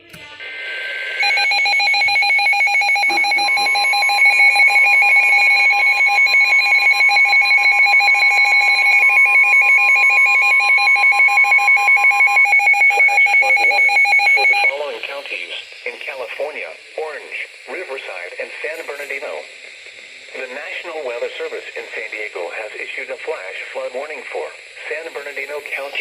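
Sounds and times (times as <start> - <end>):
steady warning alarm tone: 0.3 - 26.0
alert alarm rapid beeping: 0.6 - 14.9.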